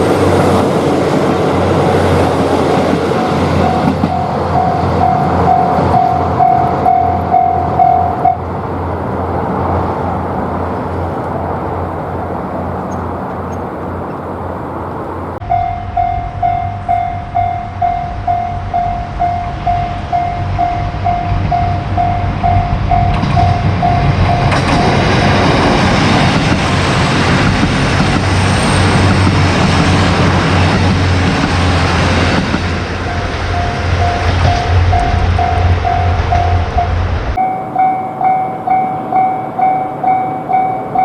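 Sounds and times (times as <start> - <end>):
train passing: 0.0 - 41.0
level-crossing alarm bell: 3.1 - 8.4, 15.4 - 25.1, 33.0 - 41.0.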